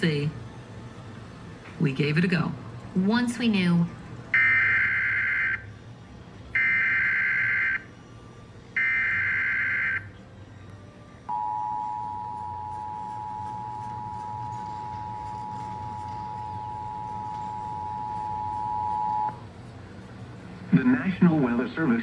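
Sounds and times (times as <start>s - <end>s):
two-tone attention signal: 11.3s - 19.4s.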